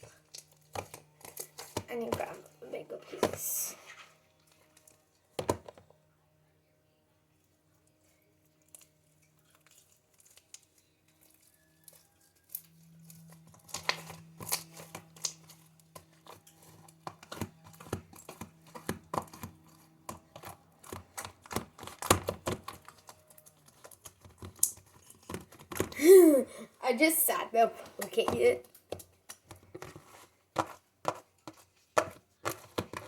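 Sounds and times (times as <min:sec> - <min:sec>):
slime squishing and crackling: 0:08.7 - 0:25.8.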